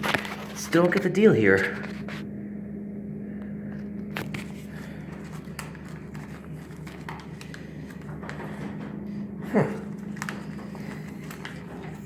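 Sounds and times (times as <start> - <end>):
vending machine humming: 0.0 - 12.0.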